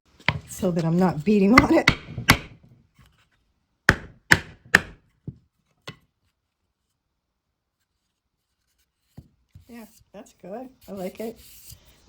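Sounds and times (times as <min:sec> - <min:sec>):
hammer tapping on wood: 0:01.5 - 0:02.6, 0:03.9 - 0:05.0.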